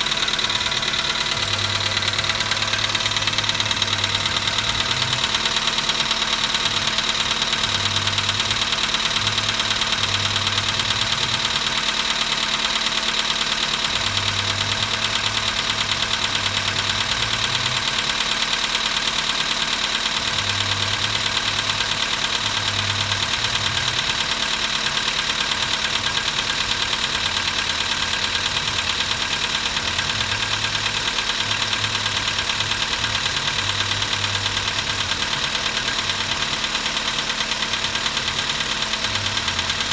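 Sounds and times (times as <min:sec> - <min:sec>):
cold engine idling with knock: 0:00.0 - 0:39.9.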